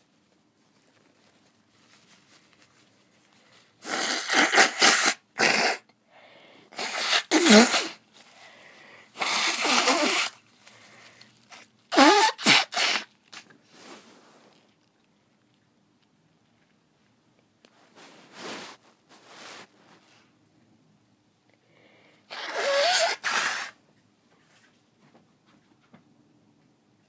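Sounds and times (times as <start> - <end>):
person blowing nose: 3.8 - 5.9, 6.7 - 13.1, 22.3 - 23.8.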